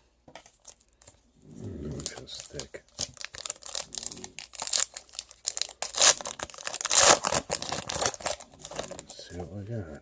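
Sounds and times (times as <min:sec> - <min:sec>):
foil wrapper tearing and crinkling: 0:02.0 - 0:09.1.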